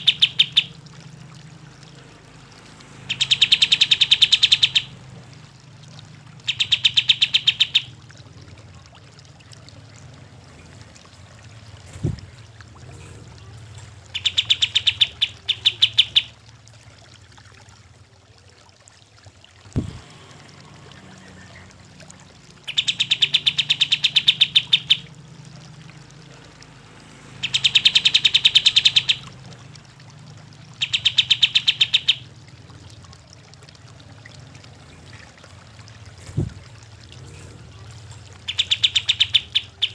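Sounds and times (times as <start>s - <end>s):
bird chattering song: 0.0s - 0.8s, 3.1s - 5.0s, 6.4s - 7.9s, 14.1s - 16.3s, 22.6s - 25.1s, 27.4s - 29.4s, 30.8s - 32.3s, 38.4s - 39.9s.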